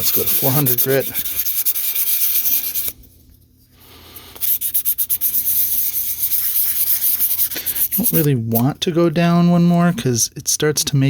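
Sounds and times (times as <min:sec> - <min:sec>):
sandpaper rubbing rusted metal: 0:00.0 - 0:03.0, 0:04.4 - 0:08.6.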